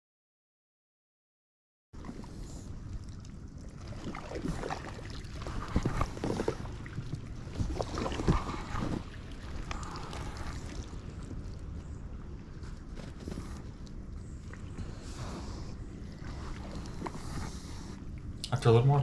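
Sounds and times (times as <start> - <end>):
paddle splashing through weed: 3.7 - 18.0.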